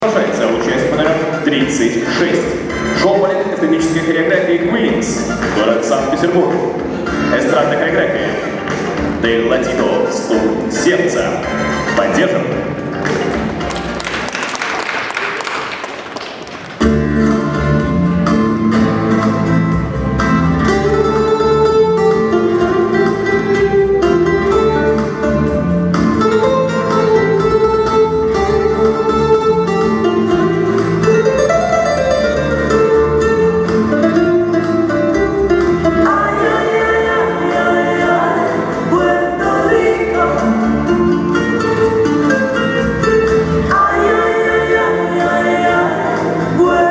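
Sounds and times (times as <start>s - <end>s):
guitar: 0.0s - 15.3s, 16.1s - 46.9s
steady beat: 8.5s - 14.5s
person singing: 35.8s - 42.0s, 43.6s - 46.9s.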